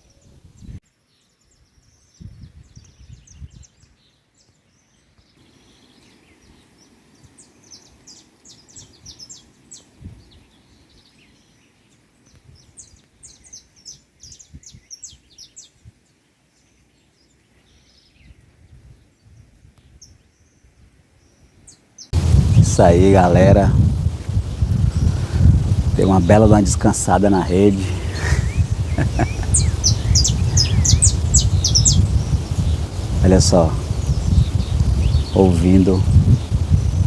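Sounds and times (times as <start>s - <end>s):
birds chirping: 4.4s - 15.7s, 21.3s - 37.0s
low uneven rumbling: 22.2s - 37.0s.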